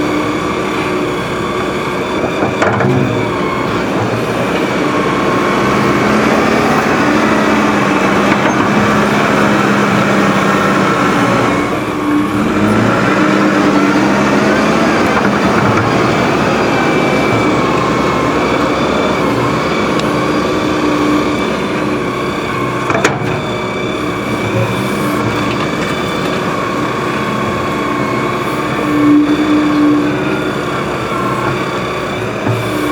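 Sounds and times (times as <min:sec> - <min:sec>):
diesel engine working under load: 0:00.0 - 0:32.9.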